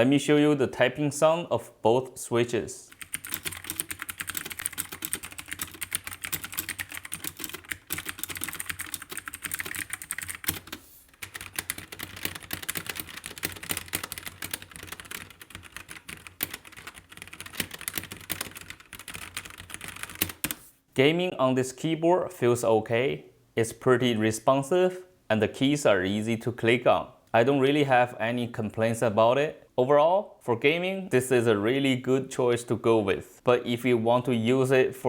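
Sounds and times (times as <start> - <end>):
typing on mechanical keyboard: 2.9 - 20.6.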